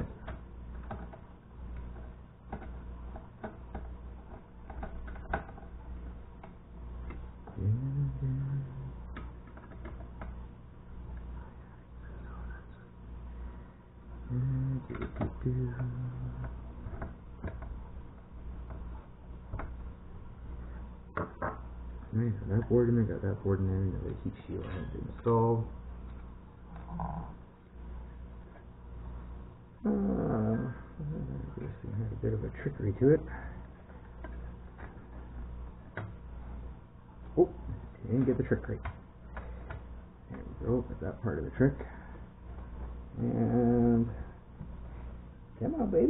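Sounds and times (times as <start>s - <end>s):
clicks and taps of plastic parts: 0.0s - 5.7s, 9.1s - 10.4s
low steady hum: 0.0s - 46.0s.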